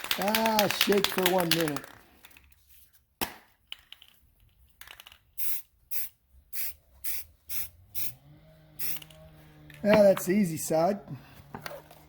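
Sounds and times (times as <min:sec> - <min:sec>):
spray paint can bursts: 0:05.4 - 0:08.1, 0:08.8 - 0:09.2.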